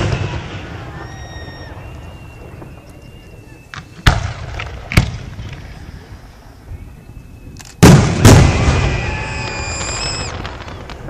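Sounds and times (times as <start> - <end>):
fireworks bursting: 0.0 - 6.4, 7.7 - 11.0.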